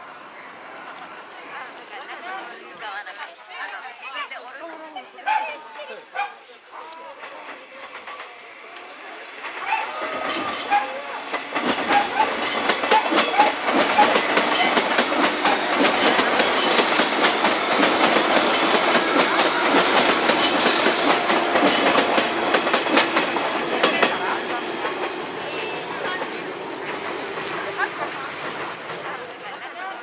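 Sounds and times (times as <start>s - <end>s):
electric train passing: 0.0s - 3.2s, 5.8s - 30.0s
wheels clattering over rail joints: 7.1s - 30.0s.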